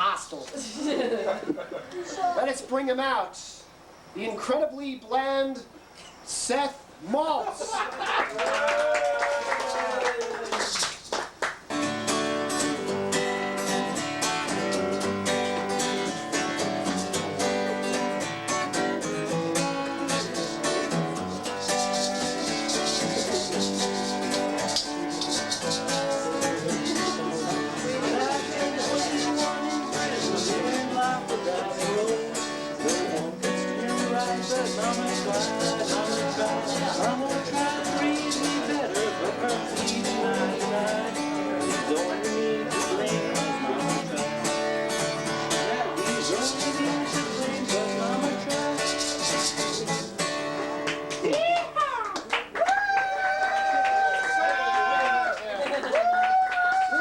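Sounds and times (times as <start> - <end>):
strummed acoustic guitar: 10.8 - 51.3.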